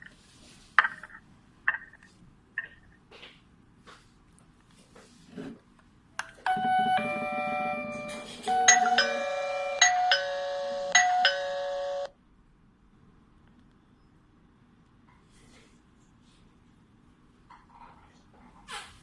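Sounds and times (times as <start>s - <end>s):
electronic doorbell chime: 6.5s - 12.1s.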